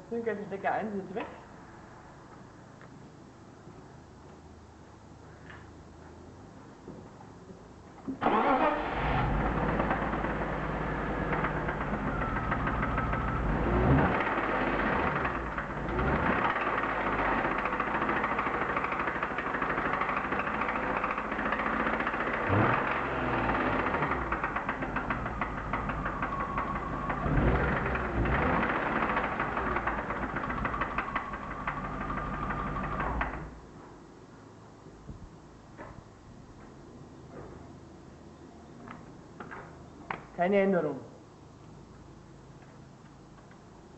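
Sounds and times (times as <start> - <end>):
car engine starting: 8.1 - 33.6
engine idling with knock: 9.6 - 33.5.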